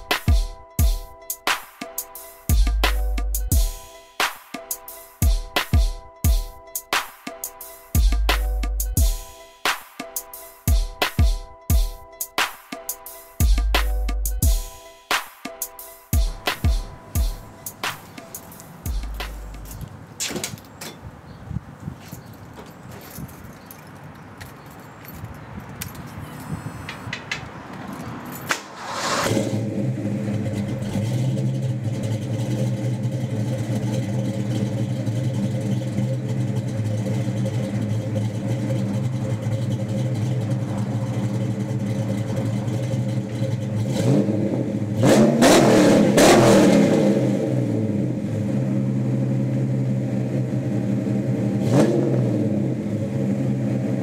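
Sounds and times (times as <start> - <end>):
car engine starting and idling: 16.2 - 20.1, 28.4 - 54.0
engine revving: 28.5 - 54.0.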